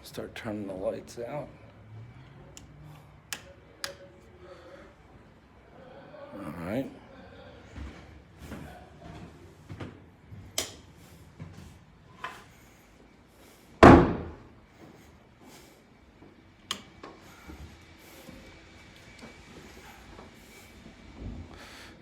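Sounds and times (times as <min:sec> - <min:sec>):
door shutting thud: 0:13.8 - 0:14.5.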